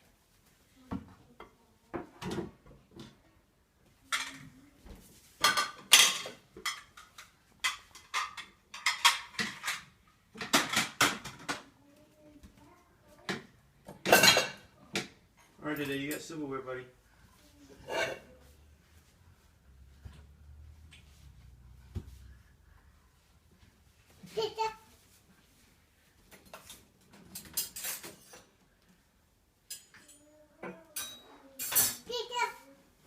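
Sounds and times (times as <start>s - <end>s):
dishes and silverware clattering: 4.0s - 4.6s, 5.4s - 11.6s, 13.3s - 16.4s, 17.8s - 18.5s, 26.3s - 28.6s, 29.6s - 32.3s.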